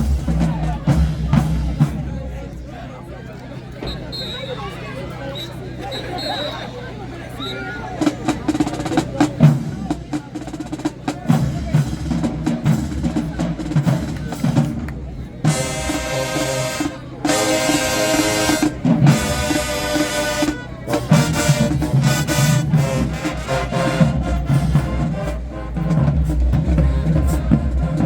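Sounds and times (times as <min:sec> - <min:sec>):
drumline beats: 0:00.0 - 0:02.9, 0:05.7 - 0:28.0
marching band playing: 0:00.0 - 0:28.0
brass held chords: 0:08.0 - 0:28.0.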